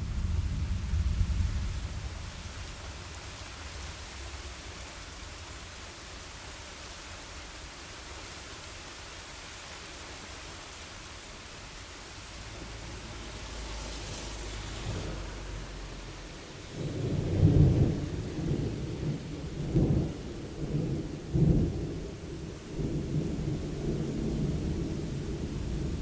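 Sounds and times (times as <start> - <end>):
low thunder rumble: 0.0 - 4.8, 12.5 - 26.0
steady rain: 0.0 - 26.0.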